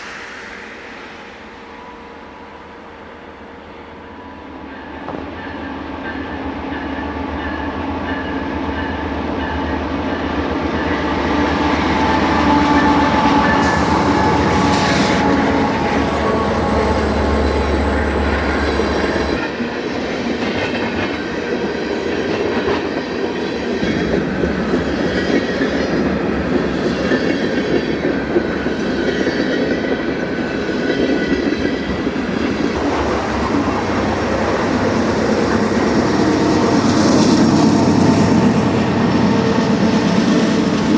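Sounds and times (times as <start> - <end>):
diesel locomotive engines droning: 0.0 - 40.9
train wheels clickety-clack: 18.2 - 40.9.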